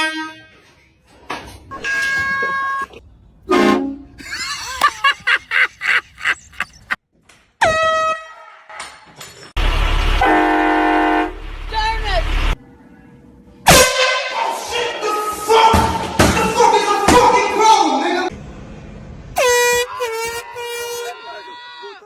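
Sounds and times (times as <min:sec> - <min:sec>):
voices: 0:04.2 - 0:07.0.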